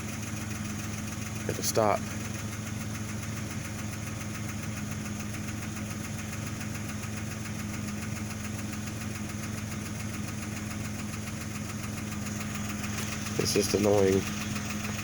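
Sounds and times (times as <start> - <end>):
car engine idling: 0.0 - 15.0
light engine tick: 2.1 - 15.0.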